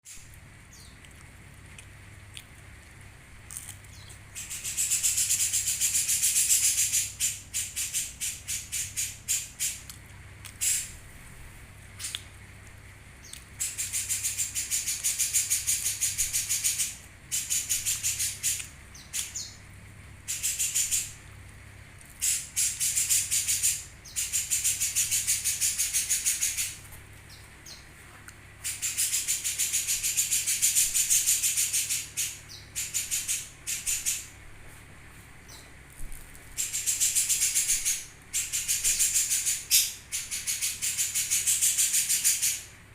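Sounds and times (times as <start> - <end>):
faint low hum: 0.0 - 42.9
songbird rattling chirps: 3.9 - 9.9, 10.6 - 11.0, 13.2 - 21.2, 22.1 - 27.9, 28.6 - 34.4, 36.5 - 42.8.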